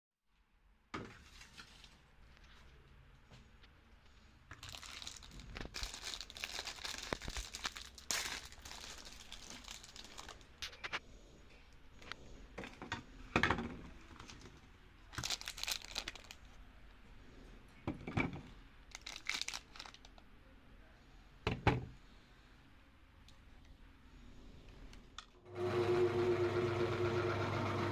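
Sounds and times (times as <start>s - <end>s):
wrapping crinkling and tearing: 4.5s - 11.0s, 15.1s - 16.6s, 18.9s - 20.2s.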